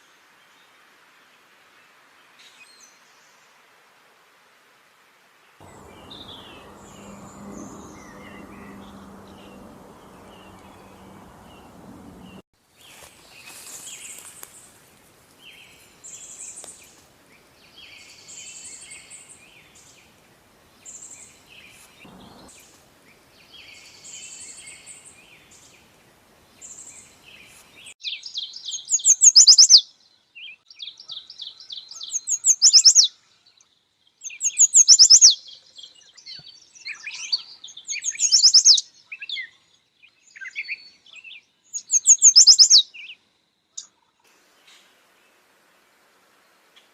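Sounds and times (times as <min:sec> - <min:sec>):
loud rapid bird trills: 0:05.6 - 0:12.4, 0:41.8 - 0:42.8
low steady hum: 0:05.6 - 0:12.4, 0:22.1 - 0:22.5
songbirds singing: 0:05.6 - 0:14.6, 0:20.8 - 0:44.9.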